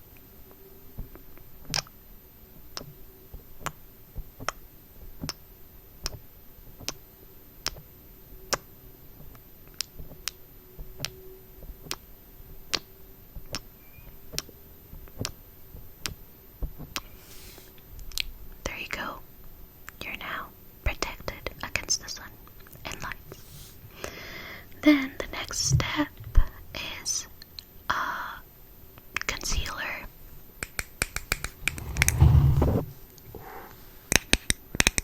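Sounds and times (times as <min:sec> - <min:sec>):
fingertips tapping: 0:30.6 - 0:32.7.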